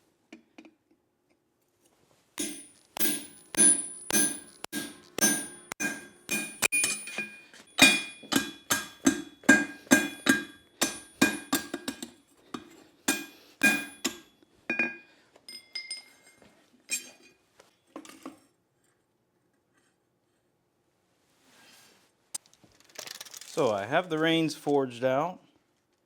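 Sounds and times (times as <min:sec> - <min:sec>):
hammer striking steel on anvil: 0:02.4 - 0:15.0.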